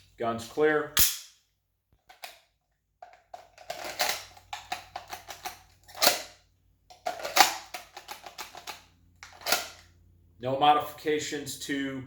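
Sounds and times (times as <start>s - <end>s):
sharp snap: 1.0s - 1.4s
pistol clicking in holster: 3.3s - 6.4s, 7.0s - 9.9s.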